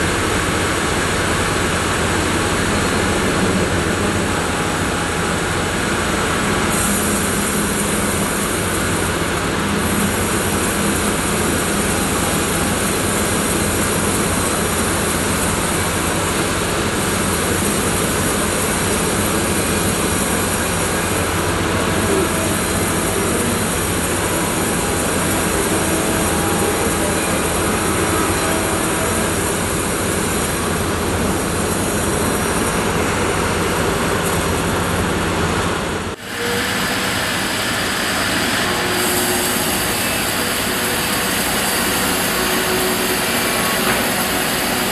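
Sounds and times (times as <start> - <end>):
sawmill machinery din: 0.0 - 44.9
high hiss: 36.2 - 44.9.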